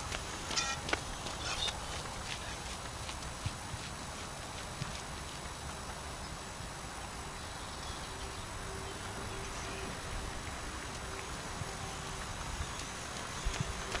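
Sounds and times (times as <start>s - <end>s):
steady outdoor hiss: 0.0s - 14.0s.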